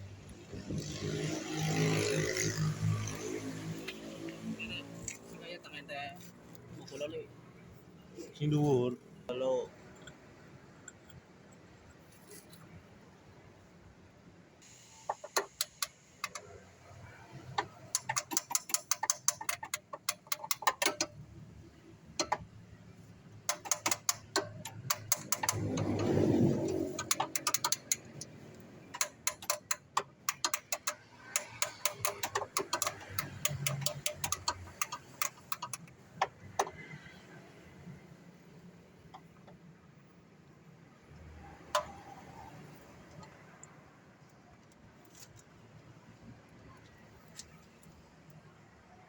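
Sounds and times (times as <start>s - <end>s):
ratchet wrench clicking: 15.1s - 21.4s, 23.3s - 37.0s.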